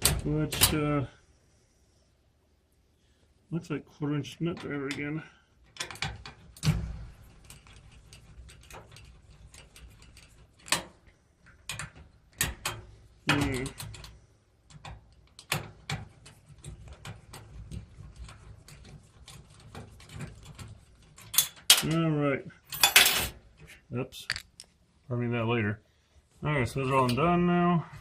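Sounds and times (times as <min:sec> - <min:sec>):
nut driver clicking: 0:24.3 - 0:24.7
small metal taps: 0:24.3 - 0:24.7.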